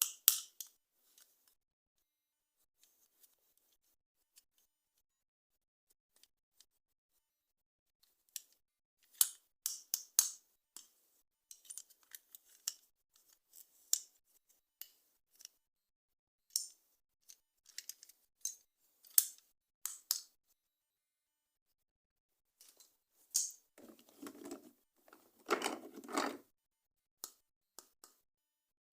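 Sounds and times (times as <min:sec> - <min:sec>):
packaging rustling: 0:23.8 - 0:26.4.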